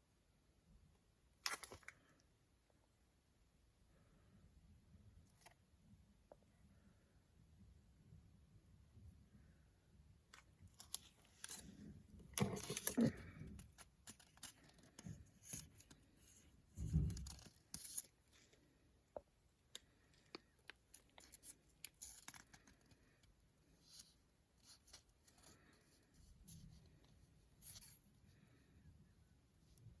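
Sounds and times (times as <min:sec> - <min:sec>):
packaging rustling: 0:10.7 - 0:16.2.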